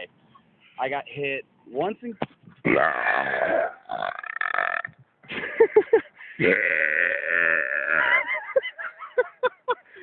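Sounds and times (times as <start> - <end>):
man belching: 2.6 - 5.1, 6.4 - 8.3.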